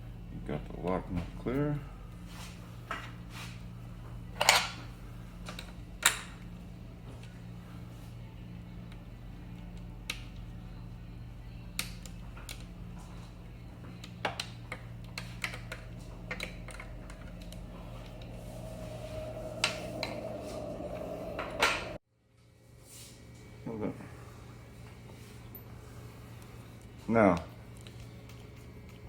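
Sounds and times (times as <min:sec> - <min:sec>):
steady low hum: 0:12.6 - 0:22.0.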